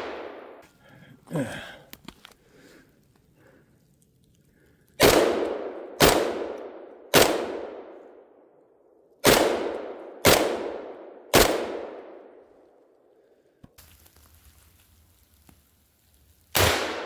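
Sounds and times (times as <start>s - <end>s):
rifle shots echoing: 0.0s - 0.6s, 5.0s - 8.2s, 9.2s - 12.4s, 16.6s - 17.0s.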